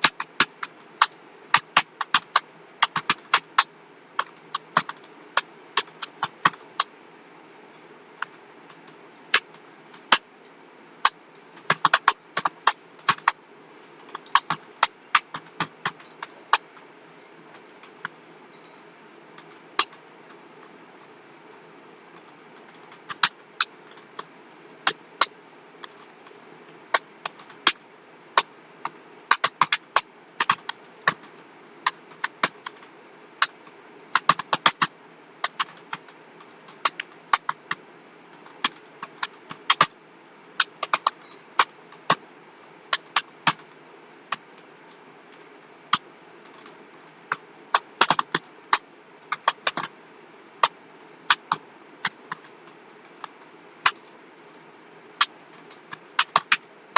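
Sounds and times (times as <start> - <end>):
computer keyboard typing: 0.0 - 6.9, 11.0 - 13.4, 14.0 - 16.8, 22.2 - 27.8, 28.4 - 37.8, 40.6 - 42.2, 42.9 - 43.7, 45.9 - 49.9, 55.2 - 56.6
steady low hum: 0.0 - 56.9.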